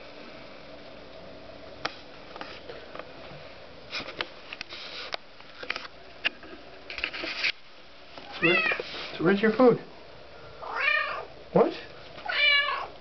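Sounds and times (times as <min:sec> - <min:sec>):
soft rustles: 0:01.8 - 0:09.6.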